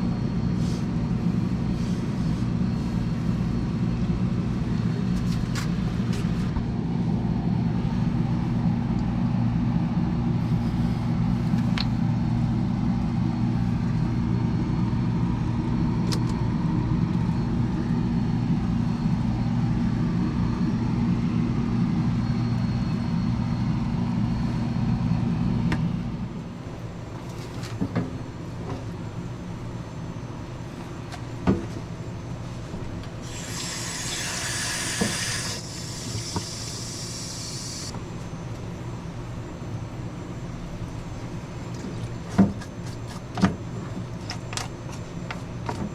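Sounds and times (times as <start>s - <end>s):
hiss: 33.2s - 37.9s
machine motor hum: 33.2s - 37.9s.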